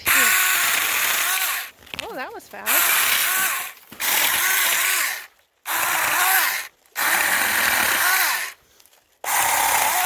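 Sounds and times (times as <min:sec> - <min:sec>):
chainsaw cutting branches: 0:00.0 - 0:10.0.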